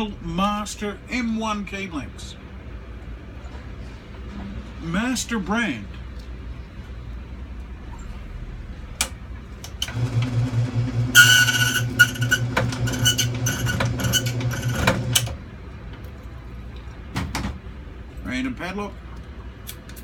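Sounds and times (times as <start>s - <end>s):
key cutting machine: 9.8s - 15.4s.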